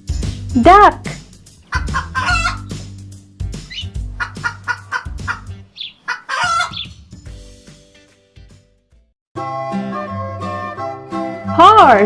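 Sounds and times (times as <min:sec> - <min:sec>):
light background music: 0:00.0 - 0:12.0
poultry calling: 0:01.6 - 0:02.9, 0:03.6 - 0:07.0.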